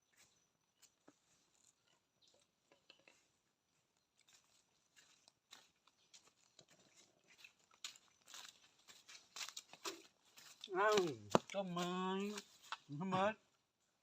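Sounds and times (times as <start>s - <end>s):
faint small clicks and rustles: 0.8s - 3.4s.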